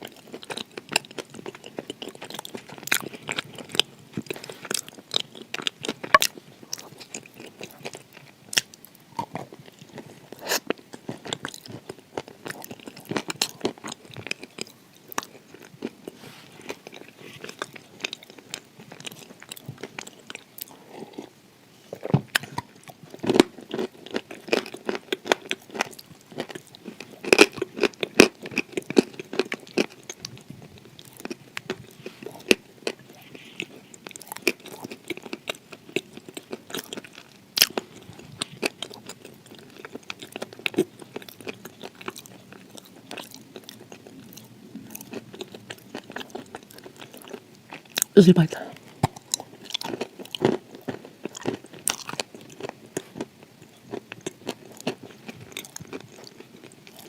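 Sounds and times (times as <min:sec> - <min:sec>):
crunchy chewing: 0:00.0 - 0:48.2, 0:48.8 - 0:57.0.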